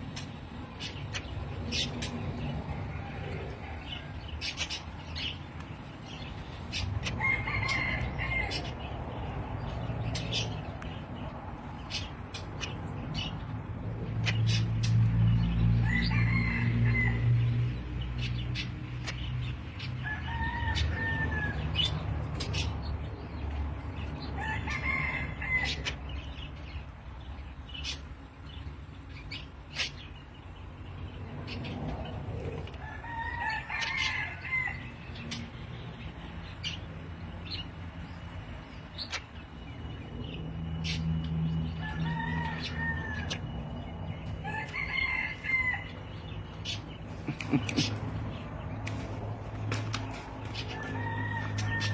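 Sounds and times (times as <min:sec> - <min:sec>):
recorded bird call: 0:37.4 - 0:51.9
scattered clicks: 0:48.8 - 0:51.9.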